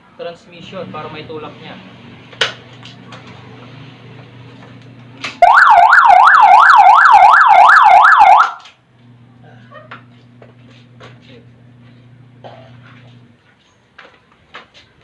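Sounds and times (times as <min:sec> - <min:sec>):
motorcycle alarm siren warbling: 0:05.4 - 0:08.6.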